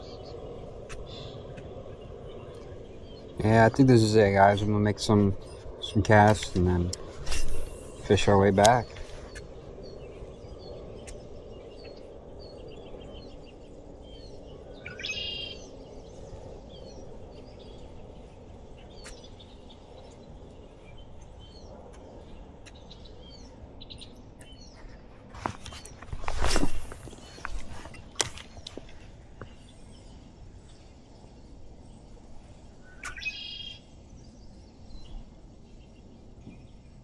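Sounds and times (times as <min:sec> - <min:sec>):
low outdoor rush: 0:00.0 - 0:15.0
songbirds chirping: 0:00.0 - 0:37.0.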